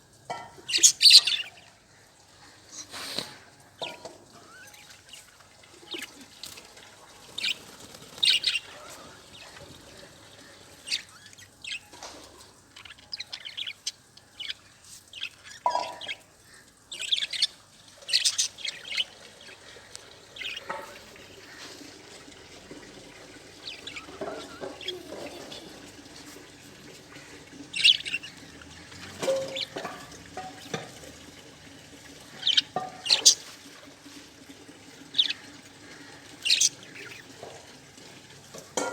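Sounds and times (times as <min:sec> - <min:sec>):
budgerigars chirping: 0:00.6 - 0:01.7, 0:07.3 - 0:21.8, 0:23.6 - 0:25.8, 0:27.0 - 0:28.5, 0:29.1 - 0:29.9, 0:32.3 - 0:33.4, 0:35.0 - 0:37.4.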